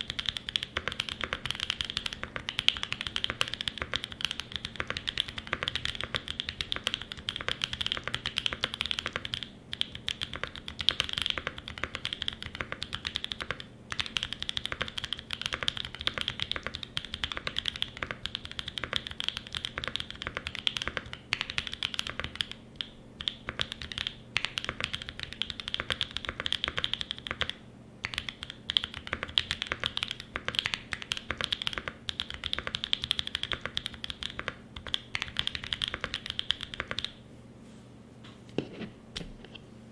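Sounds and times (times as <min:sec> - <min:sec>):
fast mechanical keyboard typing: 0:00.0 - 0:37.2.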